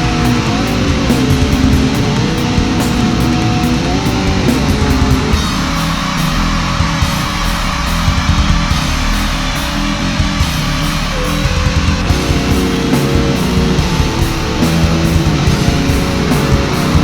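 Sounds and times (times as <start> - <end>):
distorted electric guitars: 0.0 - 17.0
heavy metal song: 0.0 - 17.0
pounding drum beat: 0.0 - 17.0
higher guitar notes: 10.4 - 17.0.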